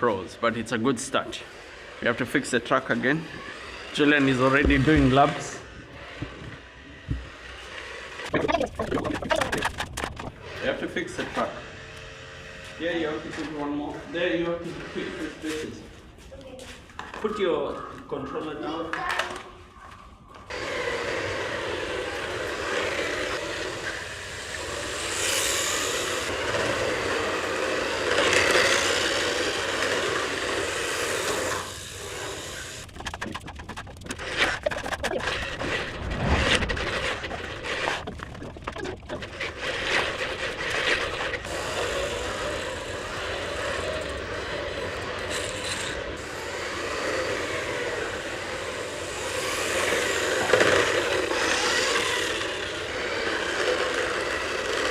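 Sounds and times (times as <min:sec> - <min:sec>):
small electric motors whining: 0:00.0 - 0:16.2, 0:16.9 - 0:54.9
sharp clicks and knocks: 0:08.4 - 0:10.4.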